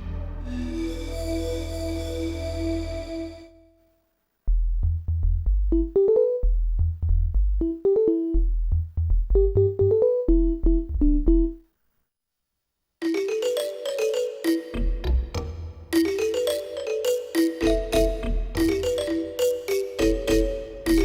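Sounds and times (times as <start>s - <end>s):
bright sustained synthesizer patch: 0.0s - 3.7s
plucked synthesizer notes: 4.5s - 11.6s
synthesizer bass line: 8.4s - 11.6s.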